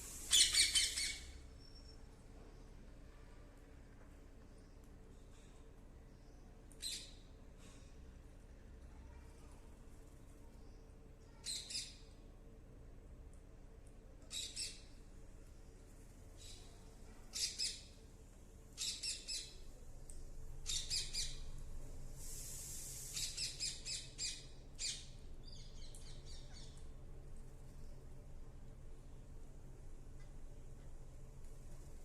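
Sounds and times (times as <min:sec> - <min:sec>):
brief high hiss: 0:00.0 - 0:00.9, 0:22.2 - 0:23.4
parrot chirping: 0:00.3 - 0:01.2.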